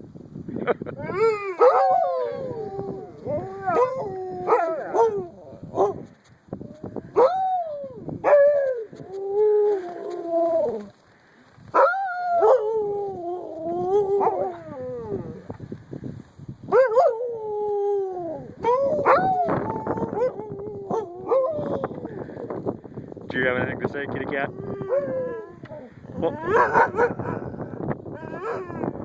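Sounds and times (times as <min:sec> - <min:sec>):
dog howling and whining: 0:01.0 - 0:06.0, 0:07.1 - 0:10.9, 0:11.7 - 0:15.5, 0:16.7 - 0:22.1, 0:24.5 - 0:29.0.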